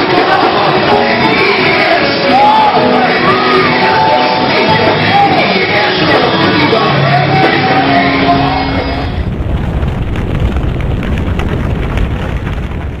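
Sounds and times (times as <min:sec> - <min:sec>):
church worship band with heavy bass: 0:00.0 - 0:11.0
person singing or shouting: 0:00.1 - 0:09.0.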